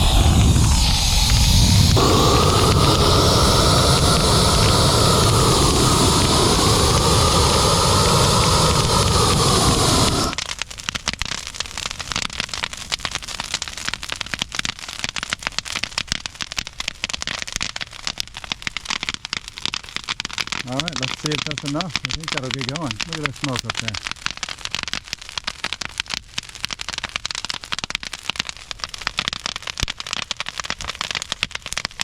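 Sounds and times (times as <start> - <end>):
loud rushing noise with hum: 0.0 - 10.4
brush fire crackling and popping: 0.0 - 32.0.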